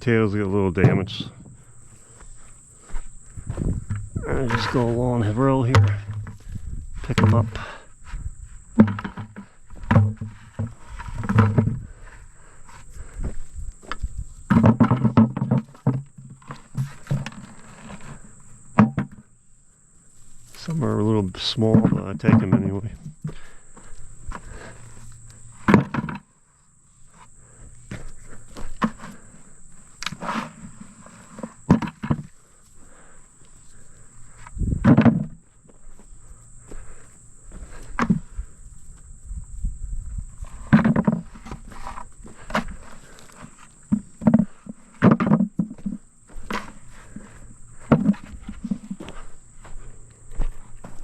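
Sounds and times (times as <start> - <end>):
footsteps on dry soil: 0.0 - 14.5, 20.0 - 25.6, 26.9 - 34.8, 35.4 - 51.0
potatoes knocking into pail: 3.6 - 6.4.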